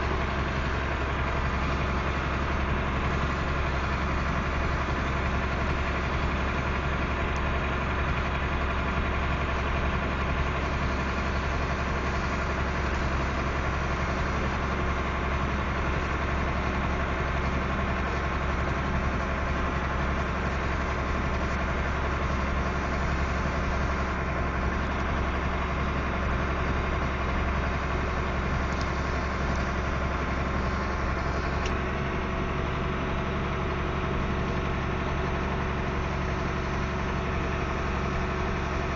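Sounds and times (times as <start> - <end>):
heavy vehicle engine running: 0.0 - 38.9.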